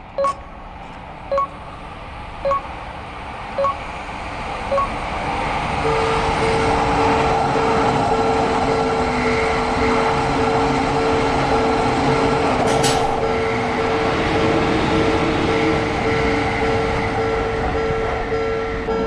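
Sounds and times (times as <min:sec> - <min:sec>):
train rumbling past: 0:00.5 - 0:19.0
railroad crossing bell ringing: 0:04.7 - 0:05.2, 0:05.8 - 0:14.1, 0:15.5 - 0:19.0.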